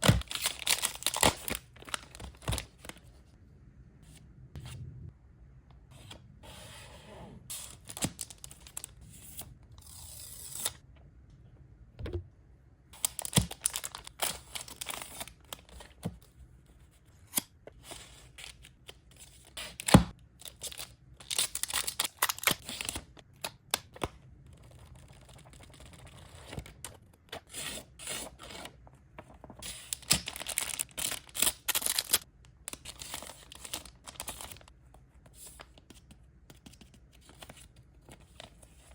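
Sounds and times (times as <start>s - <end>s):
plastic wrap crinkling and tearing: 0.0s - 2.9s, 13.0s - 15.6s, 20.5s - 23.0s, 29.8s - 34.7s.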